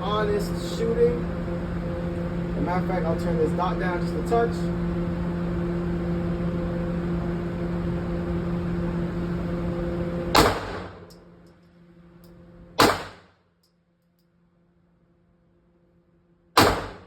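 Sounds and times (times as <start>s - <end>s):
mechanical hum: 0.0s - 17.0s
pistol shots: 10.4s - 11.1s, 12.8s - 13.3s, 16.6s - 17.0s.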